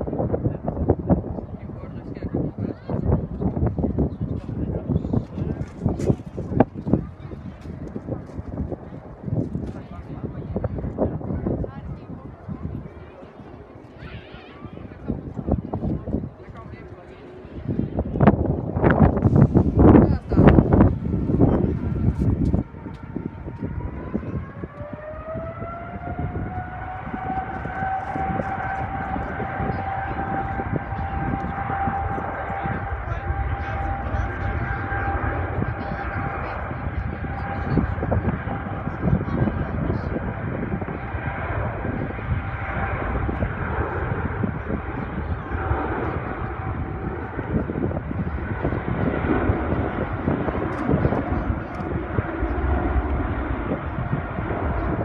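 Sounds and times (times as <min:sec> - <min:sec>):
low rumbling: 0:00.0 - 0:55.0
jet engines spooling up: 0:13.7 - 0:55.0.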